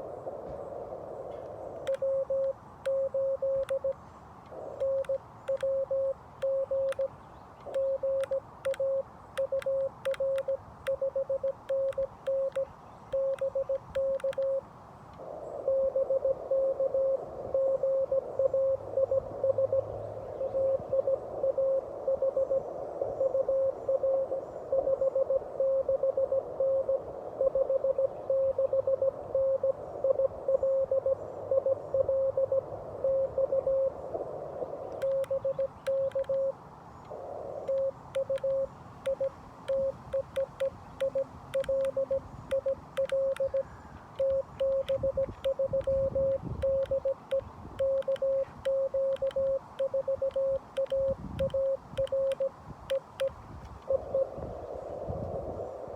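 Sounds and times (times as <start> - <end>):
radio band noise hiss: 0.0 - 55.9
morse code tone: 1.9 - 4.0, 4.8 - 7.1, 7.7 - 14.6, 27.6 - 33.9, 35.0 - 36.6, 37.7 - 54.4
morse paddle clicks: 4.8 - 14.6, 35.0 - 36.5, 37.7 - 53.9.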